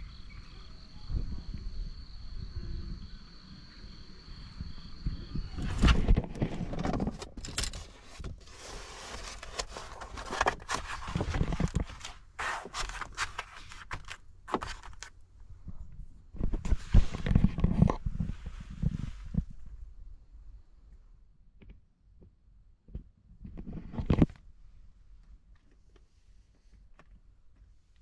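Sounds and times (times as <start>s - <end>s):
high insect trill: 0.0s - 5.9s
close scrapes and knocks: 5.6s - 15.1s.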